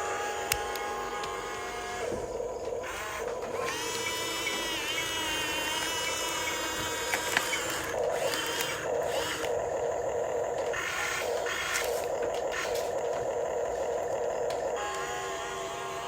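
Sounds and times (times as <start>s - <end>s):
electric motors whining: 0.0s - 16.0s.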